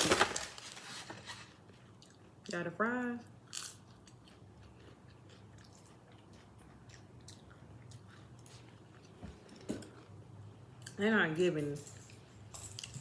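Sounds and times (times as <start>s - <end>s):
chewing fries: 1.6s - 2.6s, 3.2s - 11.0s.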